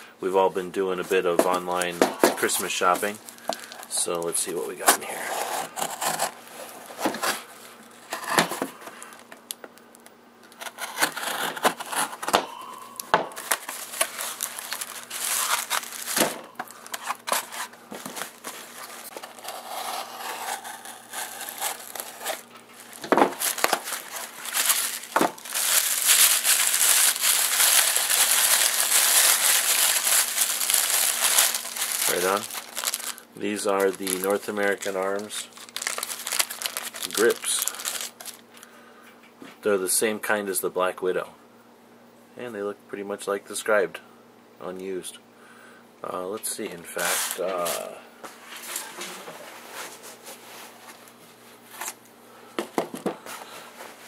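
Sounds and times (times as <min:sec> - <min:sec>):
packaging tearing and crinkling: 0:01.5 - 0:09.3, 0:10.5 - 0:12.4, 0:13.3 - 0:38.5.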